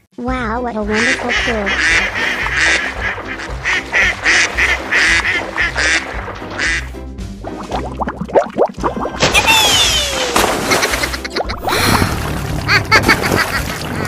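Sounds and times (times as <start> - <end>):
background music: 0.0 - 14.0
raspy duck quacks: 0.9 - 7.0.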